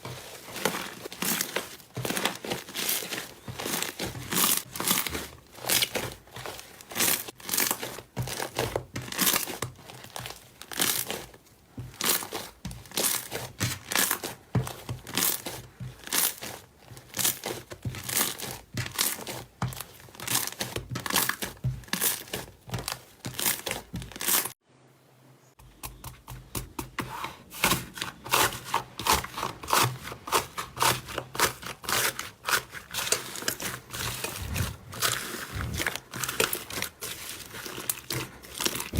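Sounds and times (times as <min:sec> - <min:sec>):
slime squelching and crackling: 0:32.9 - 0:36.3.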